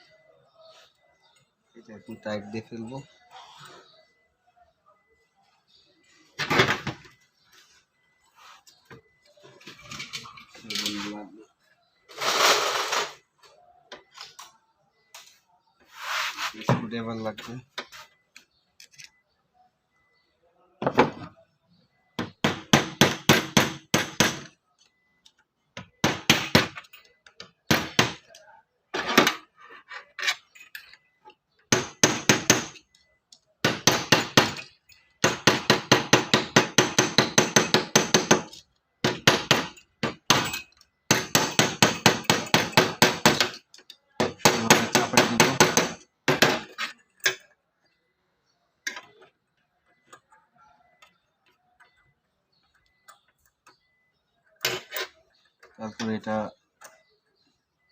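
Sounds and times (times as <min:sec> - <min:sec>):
hammer tapping on metal: 0:35.2 - 0:43.6, 0:44.2 - 0:46.7.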